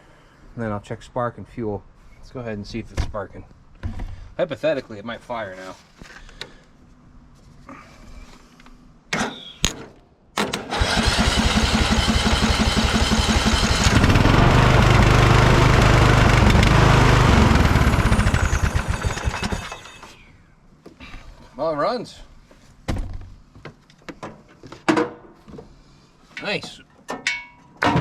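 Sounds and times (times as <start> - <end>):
small gasoline engine starting: 10.4 - 20.2.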